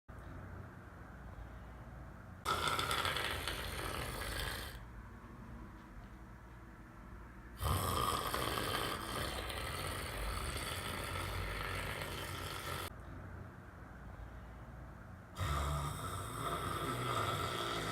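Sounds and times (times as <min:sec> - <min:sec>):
person snoring: 0:02.4 - 0:04.9, 0:07.6 - 0:12.9, 0:15.4 - 0:17.9.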